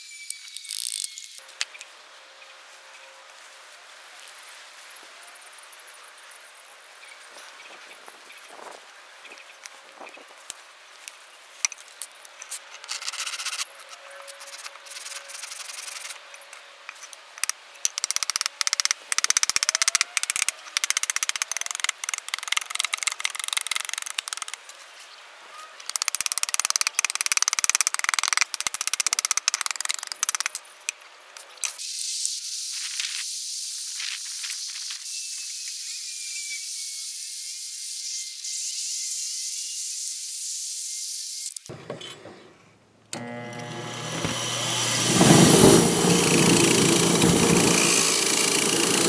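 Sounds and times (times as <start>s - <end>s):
hand tool scraping wood: 44.2s - 49.0s.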